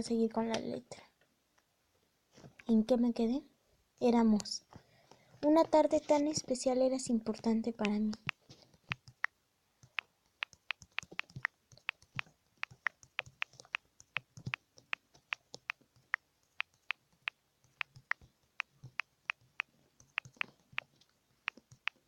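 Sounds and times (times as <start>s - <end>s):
touchscreen typing taps: 9.9s - 20.9s.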